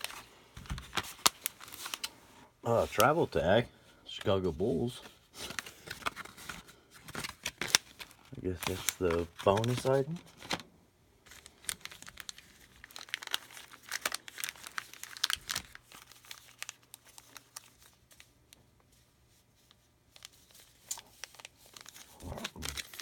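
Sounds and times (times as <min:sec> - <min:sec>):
card pack wrappers crinkling: 0:00.0 - 0:10.6, 0:11.2 - 0:18.3, 0:20.1 - 0:23.0.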